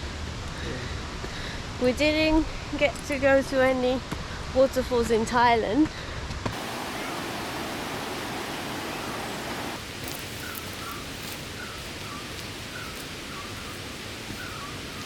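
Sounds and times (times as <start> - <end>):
waterfall rushing: 6.5 - 15.0
bird chirping: 10.1 - 15.0.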